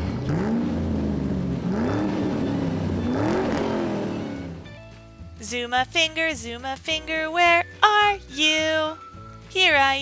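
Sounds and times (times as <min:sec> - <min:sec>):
car engine revving: 0:00.0 - 0:04.9.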